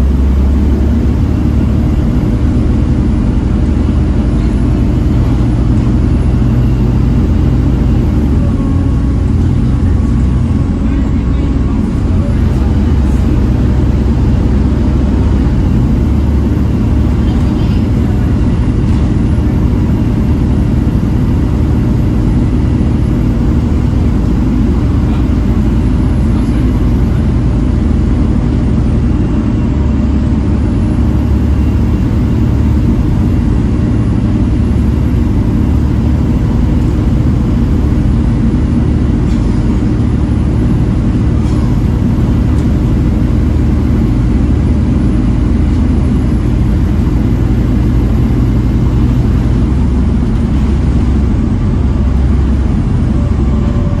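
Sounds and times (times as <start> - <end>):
bus diesel engine droning: 0.0 - 54.0.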